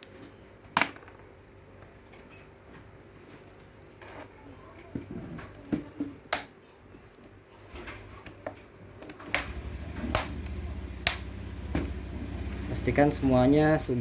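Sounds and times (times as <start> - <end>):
handling rumble: 9.4 - 14.0.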